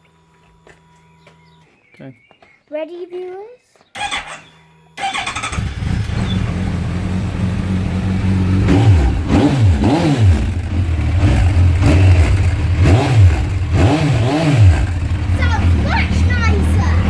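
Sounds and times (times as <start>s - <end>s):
motorcycle engine idling and revving: 4.0s - 17.0s.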